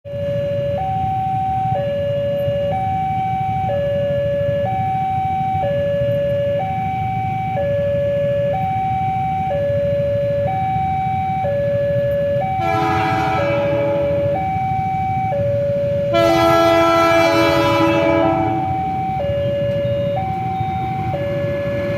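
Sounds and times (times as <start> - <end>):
two-tone warning alarm: 0.1 - 21.9
train horn blast: 12.5 - 14.4, 16.0 - 19.0.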